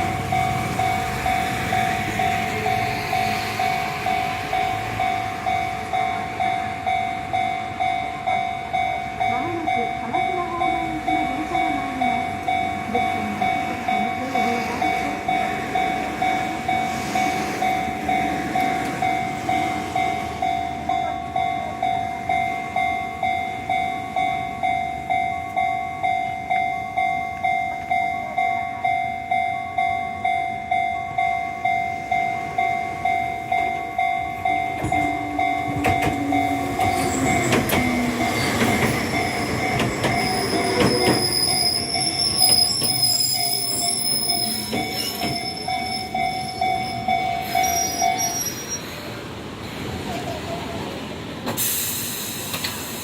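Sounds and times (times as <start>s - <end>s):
level-crossing warning bell: 0.0s - 49.2s
train wheels clicking over rail joints: 33.4s - 47.9s, 51.4s - 53.0s.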